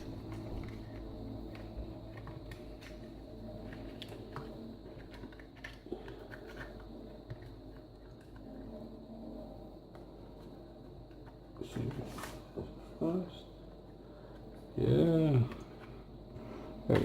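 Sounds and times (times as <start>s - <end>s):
faint steady hum: 0.0s - 17.0s
plastic parts clicking and tapping: 0.2s - 8.4s.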